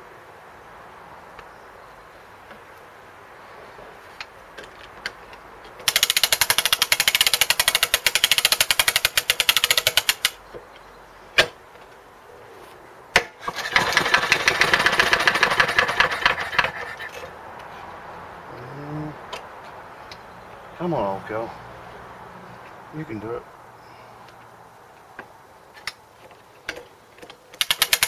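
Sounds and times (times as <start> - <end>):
lawnmower engine turning over: 4.2 - 10.8, 11.4 - 18.0, 25.0 - 28.0
sharp starter clicks: 5.8 - 10.4, 13.2 - 17.2, 27.6 - 28.0.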